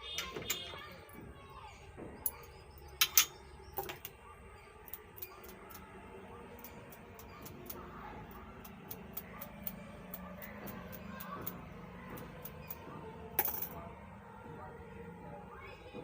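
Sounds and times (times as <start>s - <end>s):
small tools clicking: 2.2s - 4.1s, 4.8s - 5.9s, 6.6s - 12.8s.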